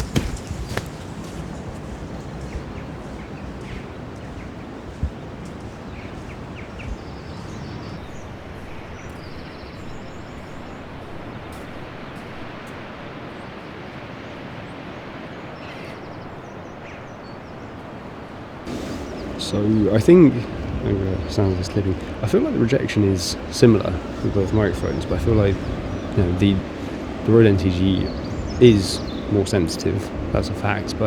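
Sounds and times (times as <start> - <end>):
knocks: 0.0 - 1.0
sea waves washing: 0.0 - 8.9, 18.0 - 31.0
wind on microphone: 0.0 - 11.4, 18.7 - 31.0
faint bird calls: 0.0 - 12.0, 18.7 - 31.0.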